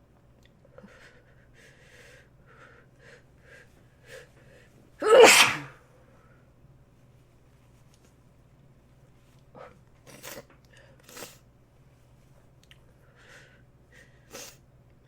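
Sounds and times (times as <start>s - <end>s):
person sneezing: 5.0s - 5.8s.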